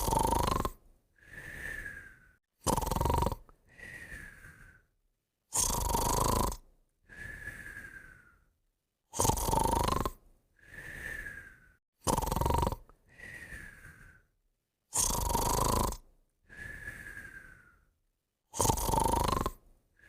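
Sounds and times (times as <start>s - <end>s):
loud rasping snoring: 0.0s - 4.6s, 5.5s - 6.6s, 9.1s - 14.2s, 14.9s - 17.5s, 18.5s - 19.6s
whistling breath: 1.2s - 2.4s, 3.7s - 5.0s, 7.0s - 8.6s, 10.6s - 11.8s, 13.1s - 14.4s, 16.4s - 18.0s.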